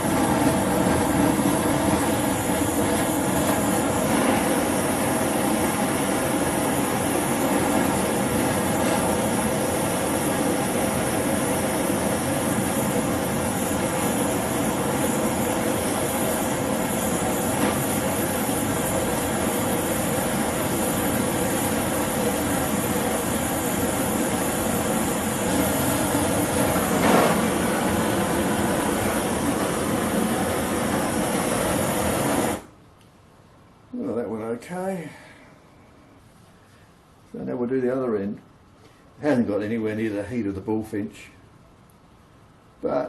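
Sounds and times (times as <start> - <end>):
torch flame rushing: 0.0 - 32.8.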